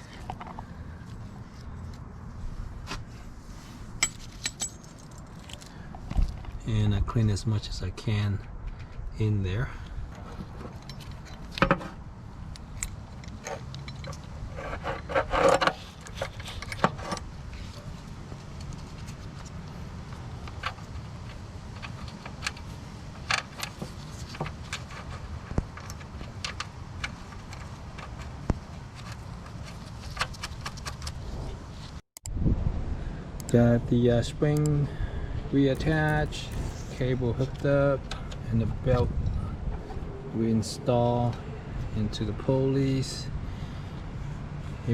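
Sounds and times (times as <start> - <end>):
metal tools clinking and scraping: 3.8 - 5.8, 10.6 - 11.6, 35.7 - 37.6.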